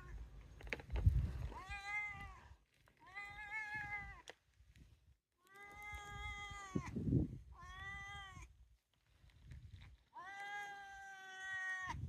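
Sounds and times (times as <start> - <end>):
muffled rustle or bump: 0.5 - 1.6
cat meowing: 5.4 - 6.9, 7.5 - 8.5, 10.2 - 12.0.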